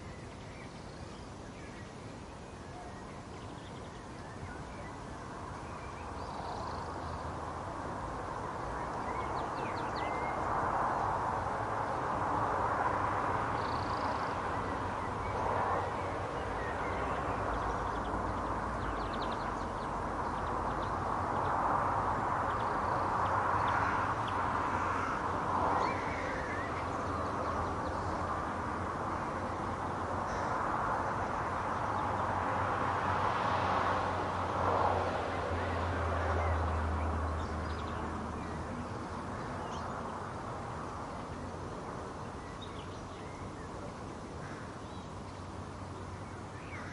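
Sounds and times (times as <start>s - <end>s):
harsh caw-like bird calls: 23.6s - 26.7s, 44.4s - 44.8s, 46.6s - 46.9s.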